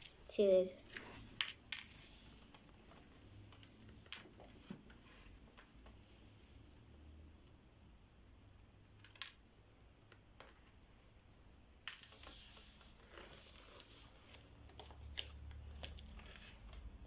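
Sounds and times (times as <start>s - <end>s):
soft rustle: 0.0s - 6.7s, 12.0s - 17.0s.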